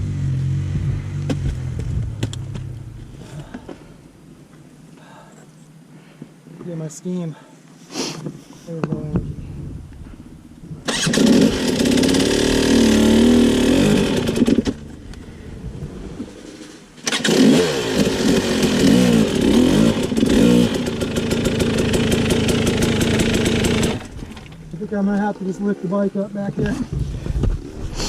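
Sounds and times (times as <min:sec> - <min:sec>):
off-road motorcycle engine revving: 0:00.0 - 0:03.0, 0:10.9 - 0:24.8.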